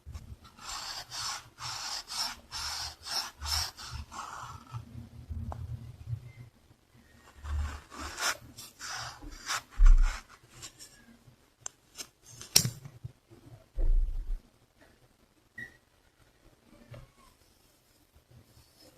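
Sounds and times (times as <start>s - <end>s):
scratching and rubbing on surface: 0.5s - 4.8s, 7.2s - 11.0s.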